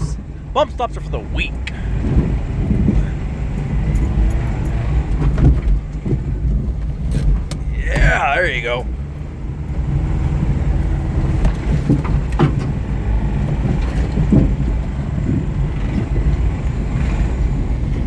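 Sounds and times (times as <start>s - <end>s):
car engine rumbling under load: 0.0s - 18.0s
car body thumps and rattles: 5.2s - 7.6s, 13.6s - 15.4s.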